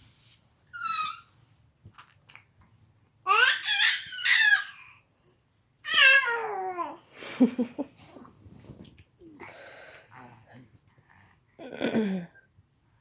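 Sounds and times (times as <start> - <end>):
baby squealing: 0.8 - 1.3
baby babbling: 3.3 - 4.8, 5.9 - 7.0.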